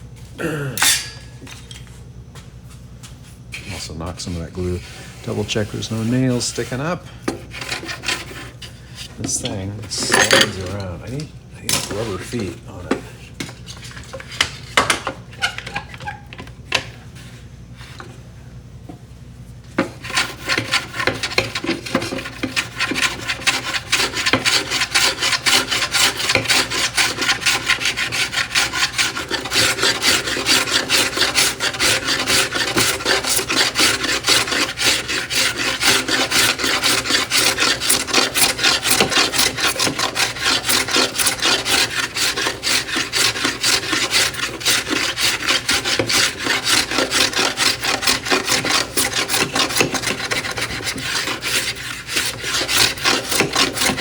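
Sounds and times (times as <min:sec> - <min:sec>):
abrasive tool rubbing wood: 0:03.6 - 0:11.1, 0:11.8 - 0:13.0, 0:20.0 - 0:54.0.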